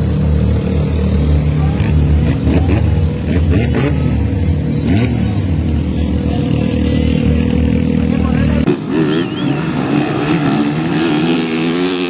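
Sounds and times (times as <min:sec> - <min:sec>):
vehicle engine running: 0:00.0 - 0:09.6.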